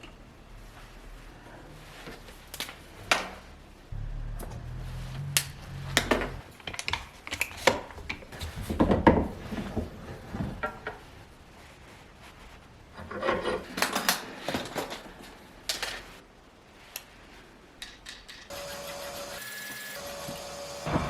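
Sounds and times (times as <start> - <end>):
low hum: 3.8 - 6.8.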